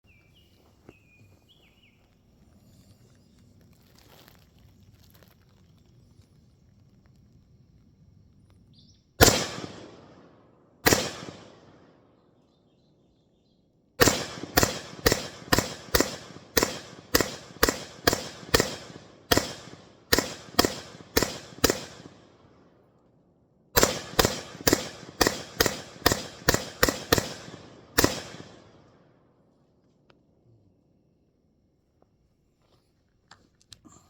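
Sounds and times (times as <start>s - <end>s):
rifle shots echoing: 9.2s - 12.1s, 14.0s - 22.7s, 23.8s - 29.2s.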